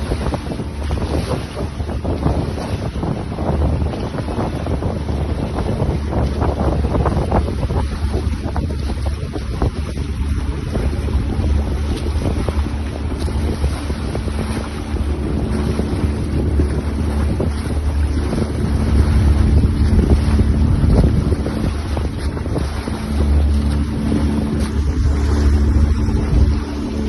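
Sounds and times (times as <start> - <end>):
boat engine running: 0.0 - 27.0
wind buffeting microphone: 0.0 - 27.0.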